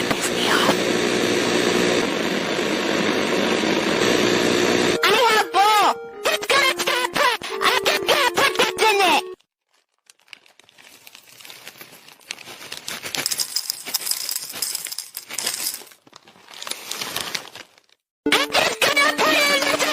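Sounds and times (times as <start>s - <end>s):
kitchen things clinking and rattling: 13.1s - 16.0s.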